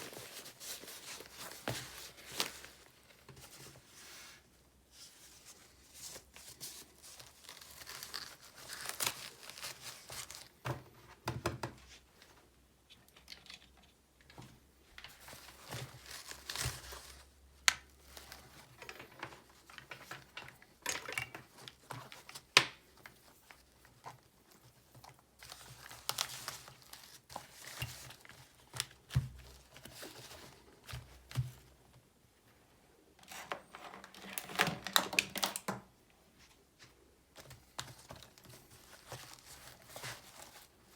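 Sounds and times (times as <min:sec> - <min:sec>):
packaging crinkling and tearing: 0:06.0 - 0:10.6, 0:15.1 - 0:24.2, 0:25.0 - 0:30.6.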